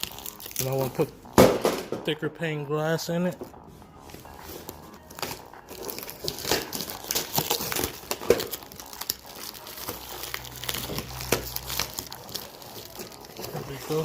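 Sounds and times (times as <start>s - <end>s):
plastic crinkling and crackling: 0.0s - 1.1s, 4.4s - 14.0s.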